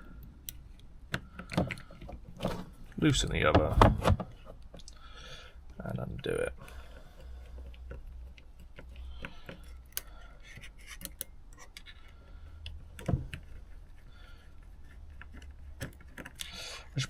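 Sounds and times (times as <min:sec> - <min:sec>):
screwdriver and screws clicking on metal: 0:07.2 - 0:13.5.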